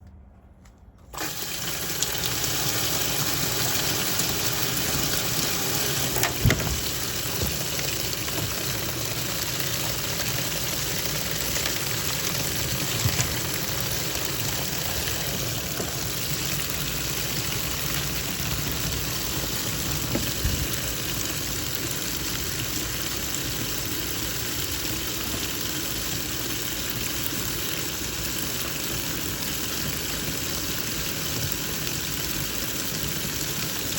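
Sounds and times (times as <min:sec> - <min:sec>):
water rushing in washing machine: 0:01.1 - 0:33.9.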